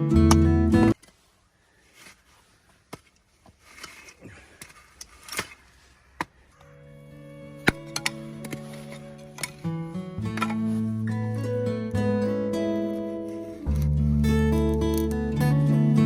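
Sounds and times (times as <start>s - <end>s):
acoustic guitar music: 0.0s - 1.0s, 6.6s - 16.0s.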